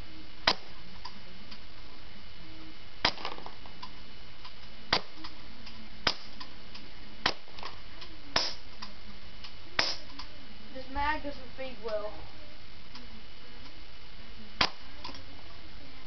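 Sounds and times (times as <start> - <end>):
airsoft pistol shots: 8.4 - 8.7, 9.8 - 10.1.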